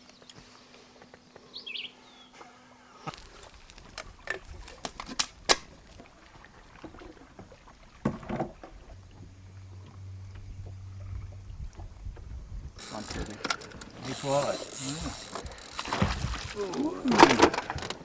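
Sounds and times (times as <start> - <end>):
low steady hum: 0.0 - 18.0
fishing gear knocking and clicking: 12.8 - 16.3.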